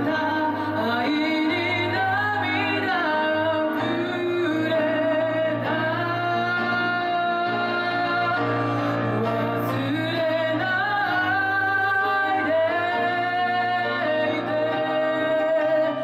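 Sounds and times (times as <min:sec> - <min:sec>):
instrumental accompaniment: 0:00.0 - 0:16.0
person singing pop song: 0:00.0 - 0:16.0.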